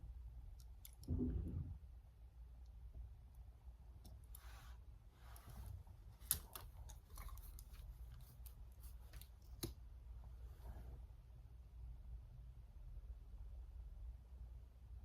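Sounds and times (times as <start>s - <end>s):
soft brushing strokes: 4.2s - 9.4s, 10.2s - 11.1s.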